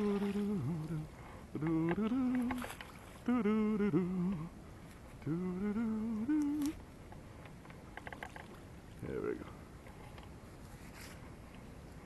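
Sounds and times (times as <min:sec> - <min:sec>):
man humming: 0:00.0 - 0:04.6, 0:05.2 - 0:06.8
faint clicks: 0:01.5 - 0:03.0, 0:06.2 - 0:08.6.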